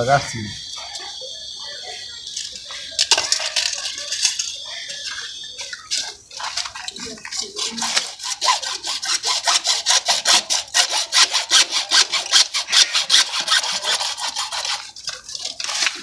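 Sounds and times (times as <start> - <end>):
hand saw cutting plastic pipe: 7.3 - 16.0.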